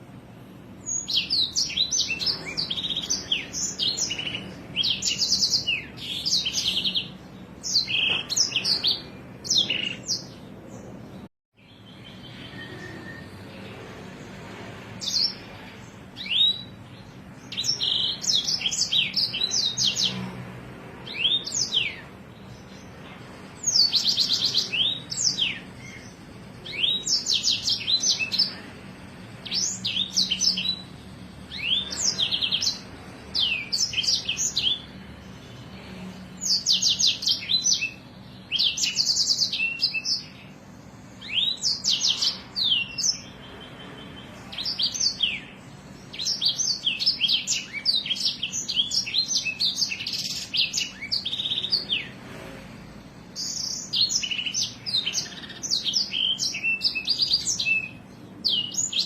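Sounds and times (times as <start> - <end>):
songbird trilling and whistling: 0.8 - 10.4, 16.2 - 20.2, 23.6 - 28.8, 29.4 - 34.9, 36.4 - 40.5, 41.2 - 52.2, 53.4 - 59.0.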